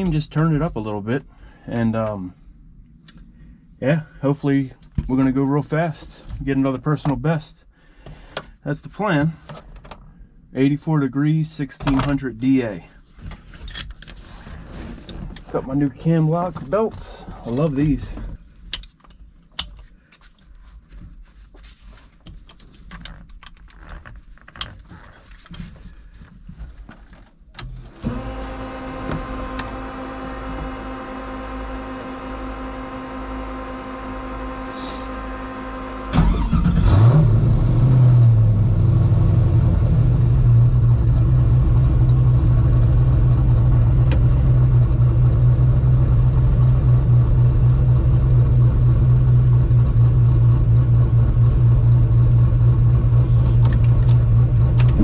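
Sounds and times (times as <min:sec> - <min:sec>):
car engine starting and idling: 0:15.4 - 0:18.3, 0:27.6 - 0:55.0
steady electric whine: 0:27.6 - 0:36.4.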